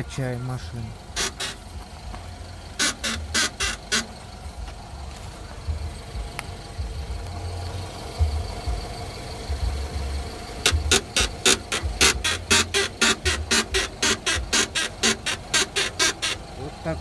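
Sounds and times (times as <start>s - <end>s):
car suspension squeaking: 0.0s - 17.0s
low thuds: 3.2s - 14.7s.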